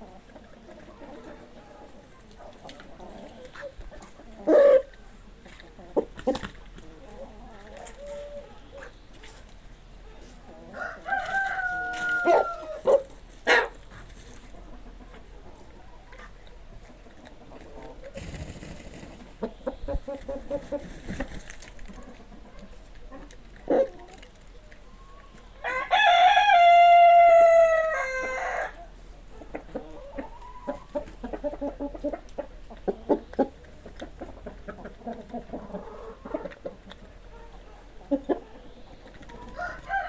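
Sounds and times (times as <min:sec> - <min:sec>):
chickens clucking: 0:00.0 - 0:40.0
rooster crowing: 0:10.8 - 0:12.9, 0:25.6 - 0:28.8, 0:39.5 - 0:40.0.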